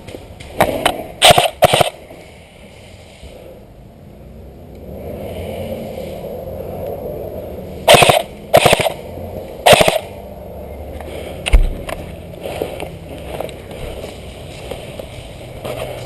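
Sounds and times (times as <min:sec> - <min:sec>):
airsoft gun rapid-fire bursts: 0:01.2 - 0:02.0, 0:07.9 - 0:09.0, 0:09.6 - 0:10.1.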